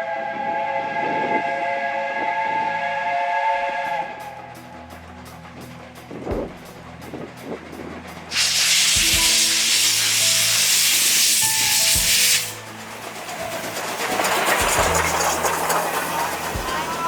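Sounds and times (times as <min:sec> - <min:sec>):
low thuds: 0:06.3 - 0:06.7
steam locomotive hissing steam: 0:08.2 - 0:17.0.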